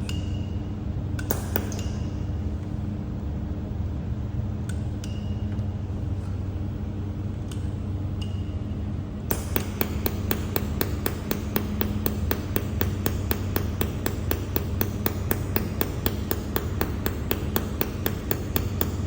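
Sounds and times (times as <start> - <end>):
low machine hum: 0.0 - 19.0
laser welder ticking: 9.3 - 19.0.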